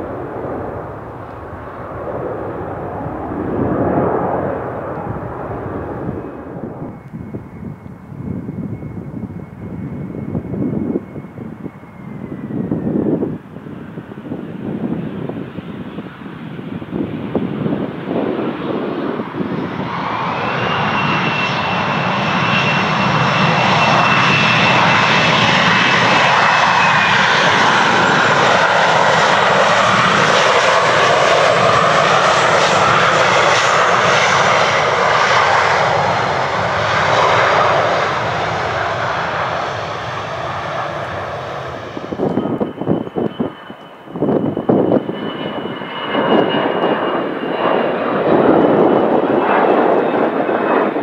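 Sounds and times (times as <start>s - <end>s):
thin high whine: 42.1s - 47.4s.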